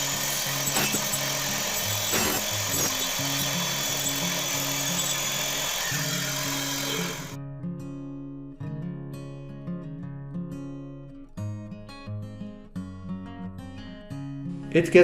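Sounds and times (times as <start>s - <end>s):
circular saw cutting wood: 0.0s - 7.4s.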